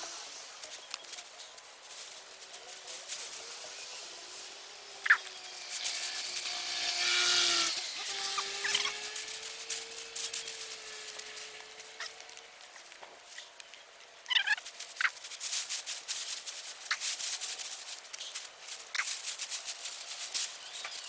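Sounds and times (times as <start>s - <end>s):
scraping and rustling: 0.0s - 21.0s
motor hum rising in pitch: 3.8s - 12.1s.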